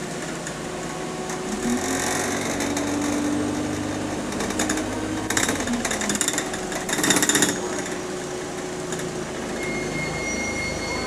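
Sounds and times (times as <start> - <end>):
bus engine pulling away: 0.0 - 11.0.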